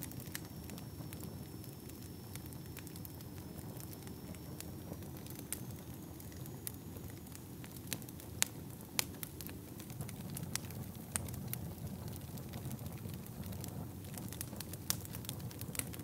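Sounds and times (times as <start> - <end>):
fire crackling: 0.0 - 16.0.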